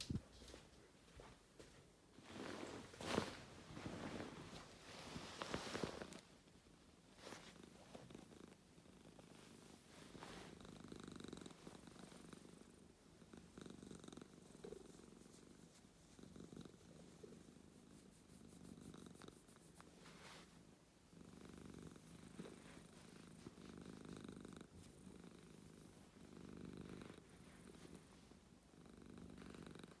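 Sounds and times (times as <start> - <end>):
cat purring: 2.2 - 30.0
small crackles: 2.3 - 6.4.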